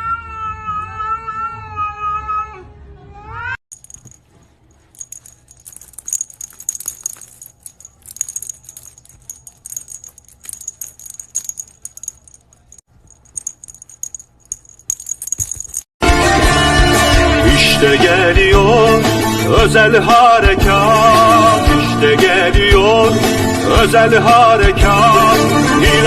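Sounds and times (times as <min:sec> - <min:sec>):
small bell jingling: 0:03.7 - 0:16.0.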